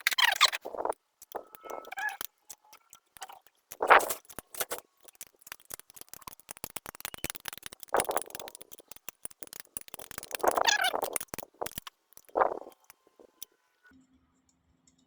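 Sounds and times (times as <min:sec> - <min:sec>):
hand tools clicking on metal: 0:00.0 - 0:13.4.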